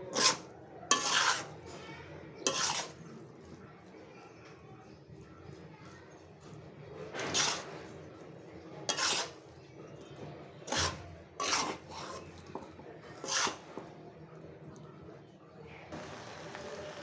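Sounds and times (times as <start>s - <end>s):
spatula scraping rice in wok: 0.0s - 1.8s, 2.4s - 3.6s, 5.2s - 9.8s, 10.6s - 13.9s.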